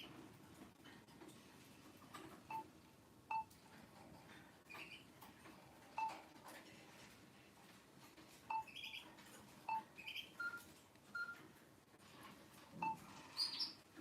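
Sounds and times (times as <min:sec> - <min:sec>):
phone ringtone chirps: 0:09.7 - 0:10.6.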